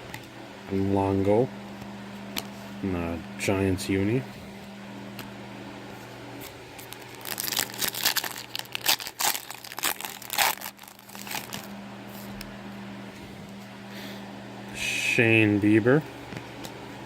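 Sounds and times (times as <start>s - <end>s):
steady low hum: 0.0s - 17.0s
foil wrapper tearing and crinkling: 6.4s - 11.7s.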